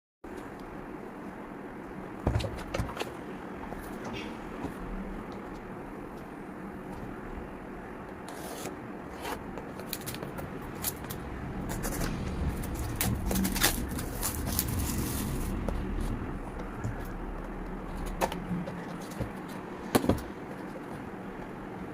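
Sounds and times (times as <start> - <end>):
steady low rumble: 3.2 - 8.1, 9.4 - 21.9
packaging scraping and rustling: 8.3 - 16.1.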